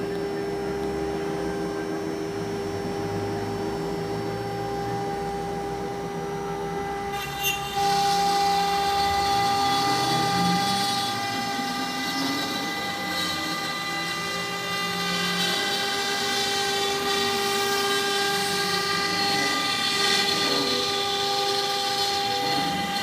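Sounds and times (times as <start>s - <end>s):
cnc router spindle whine: 0.0s - 23.0s
low motor tones: 0.0s - 23.0s
cutter cutting wood: 6.6s - 23.0s.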